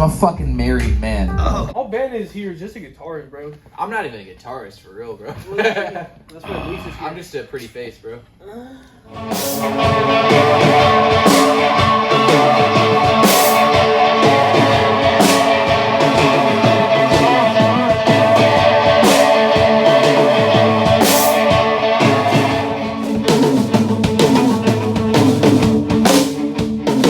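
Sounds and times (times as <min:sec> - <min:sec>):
cymbal crash: 0:09.1 - 0:26.2
rock band playing: 0:09.1 - 0:27.0.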